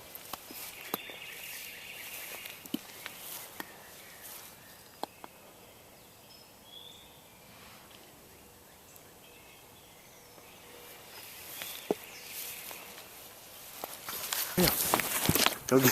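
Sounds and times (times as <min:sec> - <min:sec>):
light clicks and rustles: 0:11.1 - 0:15.9.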